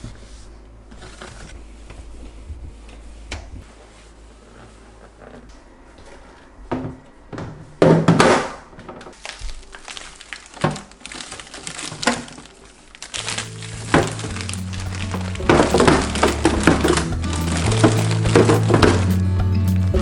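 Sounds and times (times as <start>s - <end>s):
plastic packaging crinkling: 9.1s - 19.3s
background music: 13.2s - 20.0s
containers knocking: 13.2s - 20.0s.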